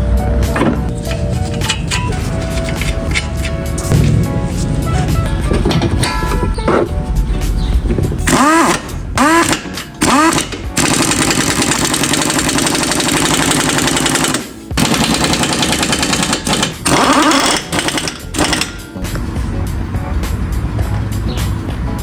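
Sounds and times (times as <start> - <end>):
pneumatic impact wrench: 8.3 - 18.8.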